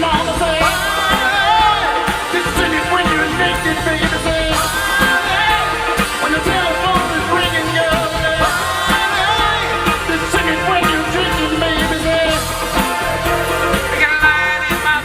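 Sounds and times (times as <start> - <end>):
live rock band playing: 0.0 - 15.0
steady drum beats: 0.0 - 15.0.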